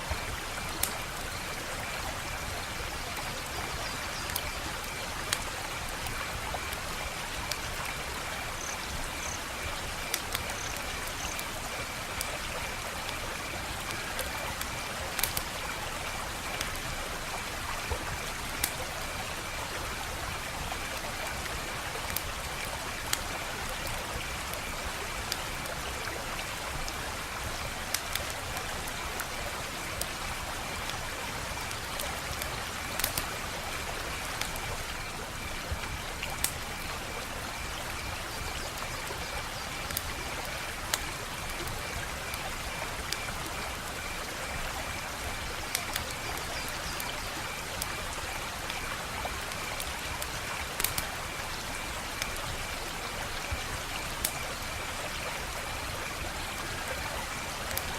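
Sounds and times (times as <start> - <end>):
wood fire crackling: 4.2 - 35.1, 38.7 - 46.8, 47.4 - 53.0, 56.4 - 57.9
sharp pops and snaps: 13.9 - 15.6, 31.8 - 33.3, 50.8 - 51.1.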